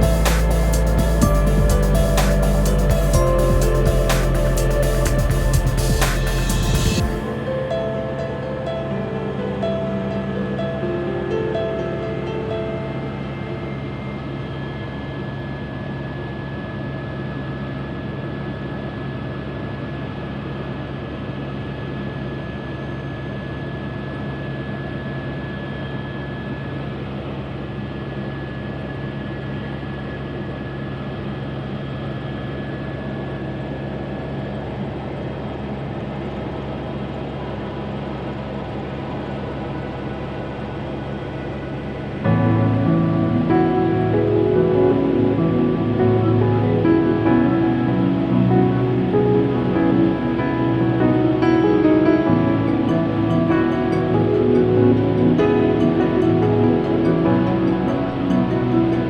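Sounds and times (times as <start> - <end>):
faint high whine: 0.0 - 59.0
helicopter rotor and engine drone: 12.3 - 43.0.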